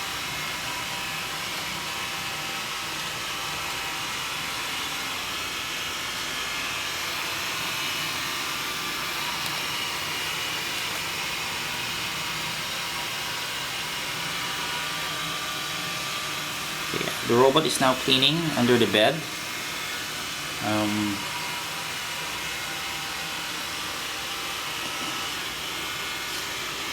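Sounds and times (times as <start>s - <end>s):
robot vacuum whirring: 0.0s - 26.9s.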